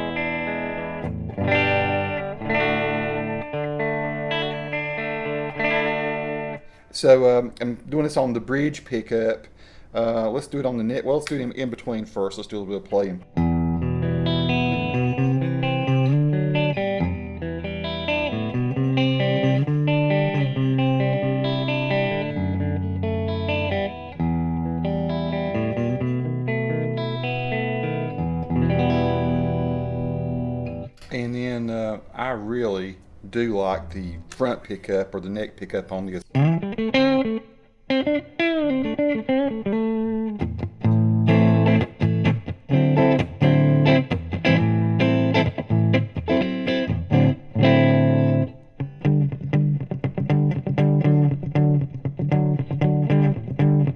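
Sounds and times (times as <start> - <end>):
clean electric guitar chords: 0.0 - 6.8, 12.9 - 31.1, 36.2 - 53.9.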